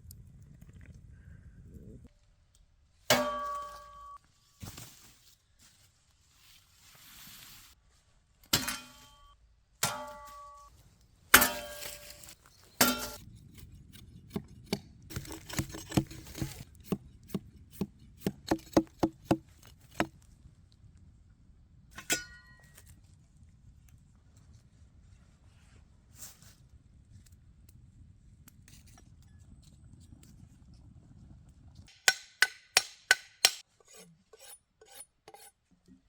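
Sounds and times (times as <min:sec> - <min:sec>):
metal tool striking wood: 0:03.1 - 0:04.2, 0:08.5 - 0:09.2, 0:09.8 - 0:10.6, 0:11.3 - 0:13.2, 0:14.3 - 0:20.1, 0:31.9 - 0:35.5
metallic ring: 0:22.0 - 0:22.8.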